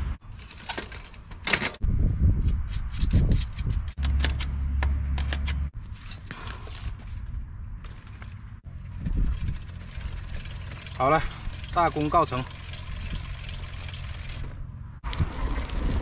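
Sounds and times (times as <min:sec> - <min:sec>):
metal clicks and rattles: 0:00.3 - 0:01.8, 0:04.0 - 0:06.2.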